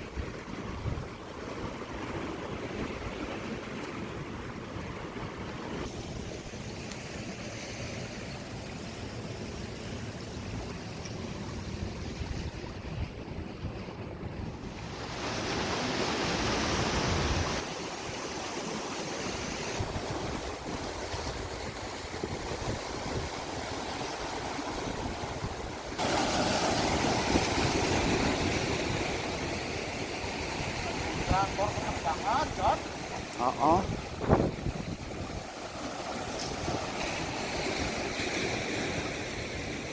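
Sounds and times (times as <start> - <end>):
sea waves breaking: 0.0 - 39.9
wind on microphone: 11.8 - 17.6, 19.4 - 26.1, 26.8 - 35.5.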